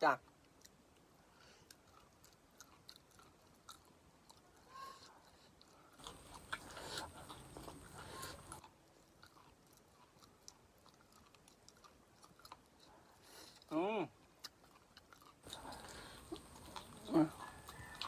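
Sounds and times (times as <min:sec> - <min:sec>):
chewing food: 0:00.3 - 0:18.0
wet mouth clicks: 0:06.0 - 0:08.6, 0:14.5 - 0:18.0.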